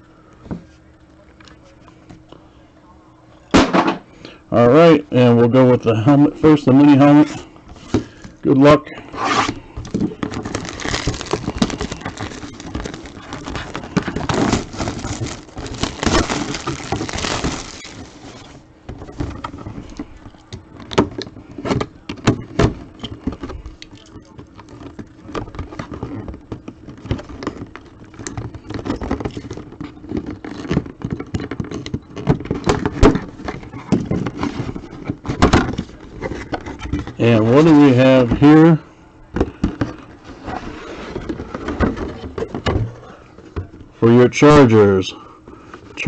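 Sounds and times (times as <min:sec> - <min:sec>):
packaging crinkling and tearing: 0:09.5 - 0:21.0
clicks and knocks of handling: 0:18.9 - 0:37.2.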